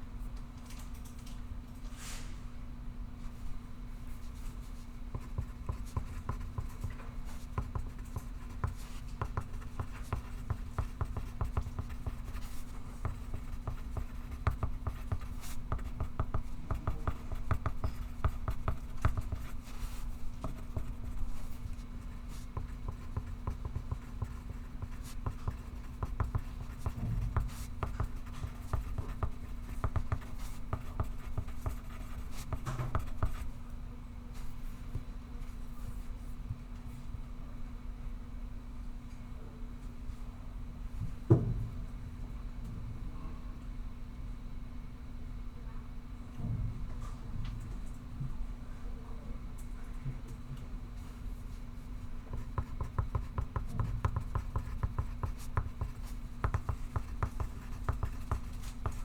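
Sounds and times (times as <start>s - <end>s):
pencil scratching on paper: 5.2s - 33.5s, 52.3s - 59.0s.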